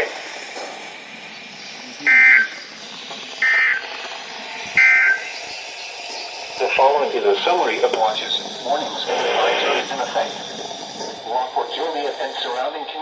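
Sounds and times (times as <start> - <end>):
radio hiss: 0.0 - 13.0
warbling two-tone data buzzes: 1.8 - 2.7, 3.4 - 3.9, 4.6 - 5.9.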